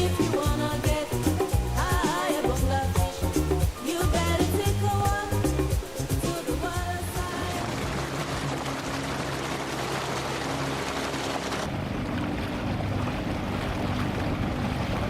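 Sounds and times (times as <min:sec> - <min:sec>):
water rushing: 0:00.0 - 0:15.0
low hum: 0:07.2 - 0:15.0.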